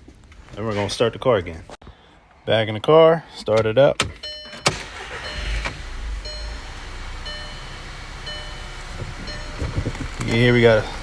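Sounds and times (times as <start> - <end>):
car engine starting and idling: 3.5 - 11.0.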